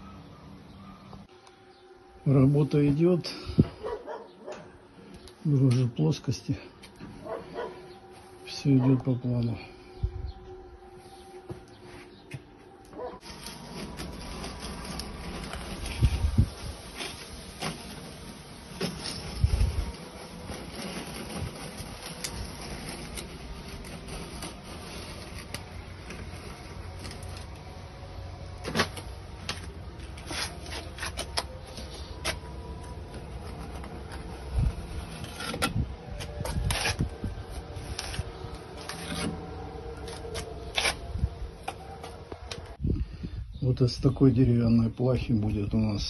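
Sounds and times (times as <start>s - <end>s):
faint hum: 0.0s - 43.5s
scraping: 11.1s - 42.8s.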